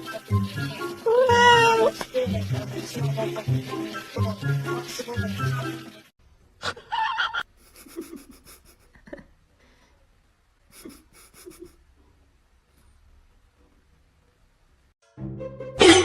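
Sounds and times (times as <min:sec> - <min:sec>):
music: 0:00.0 - 0:06.1, 0:15.0 - 0:16.0.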